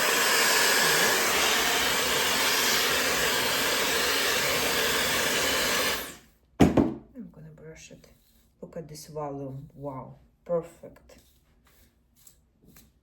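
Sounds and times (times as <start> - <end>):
hair dryer blowing: 0.0 - 6.2
short knock: 6.6 - 7.1.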